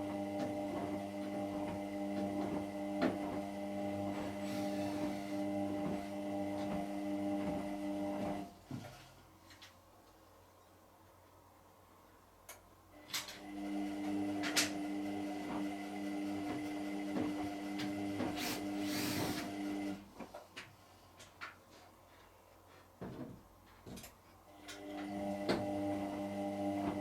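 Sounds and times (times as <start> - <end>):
washing machine drum motor humming: 0.0 - 8.5, 13.4 - 20.0, 24.8 - 27.0.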